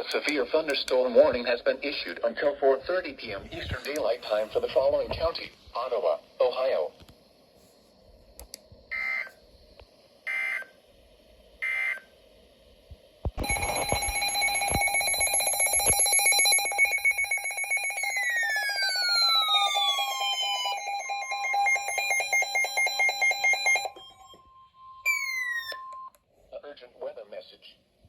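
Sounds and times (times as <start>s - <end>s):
electronic data bursts: 13.4s - 24.3s
pulsing electronic alert alarm: 13.4s - 26.1s.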